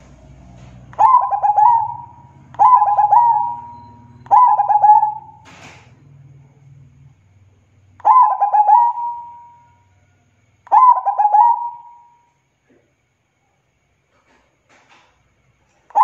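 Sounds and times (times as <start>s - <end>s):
dove cooing: 0.9s - 5.7s, 8.0s - 9.7s, 10.7s - 12.2s.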